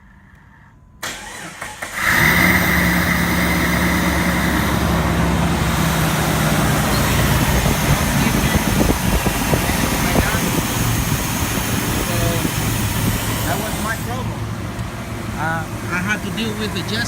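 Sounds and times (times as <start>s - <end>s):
starter cranking engine: 1.0s - 5.0s
car engine running: 2.0s - 17.0s
high whine: 2.6s - 17.0s.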